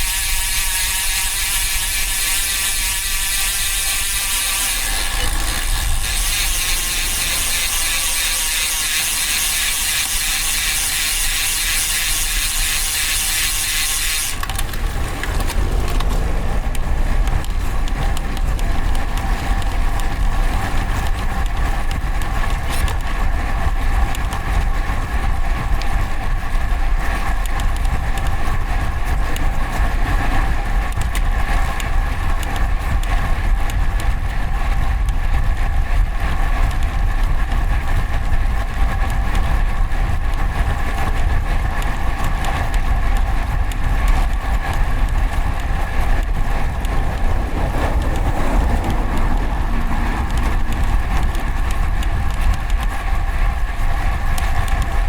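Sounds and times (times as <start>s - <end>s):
steady multi-tone whine: 0.0s - 15.5s
road noise: 0.0s - 55.0s
traffic noise: 0.0s - 55.0s
wind rumble on microphone: 14.4s - 55.0s.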